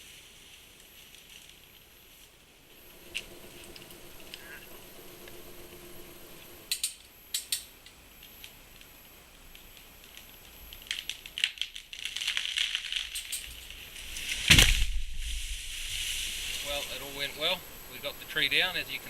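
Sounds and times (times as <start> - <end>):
wood cracking: 9.5 - 15.5
branches and leaves crashing: 10.8 - 17.5.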